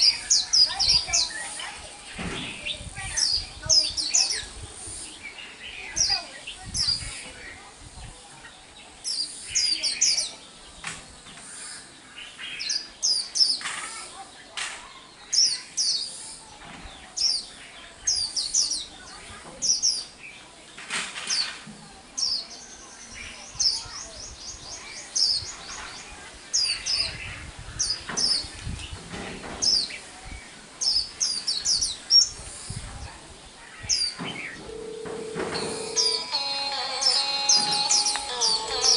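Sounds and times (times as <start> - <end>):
bird trilling: 34.5 - 38.9
bird chirping and whistling: 35.5 - 38.9.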